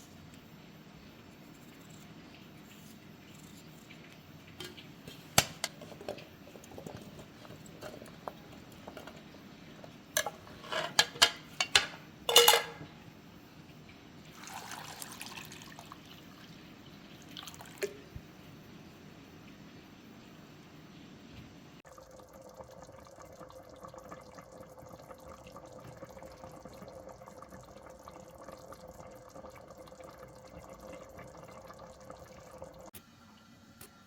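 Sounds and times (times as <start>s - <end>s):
utensils and dishes clinking: 4.6s - 13.0s.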